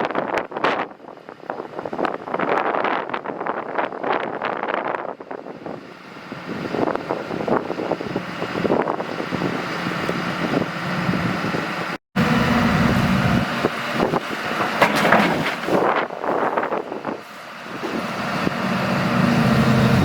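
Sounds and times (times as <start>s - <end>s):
wind on microphone: 0.0s - 14.8s
excavator diesel engine running: 5.7s - 20.0s
irregular clatter: 14.5s - 16.1s.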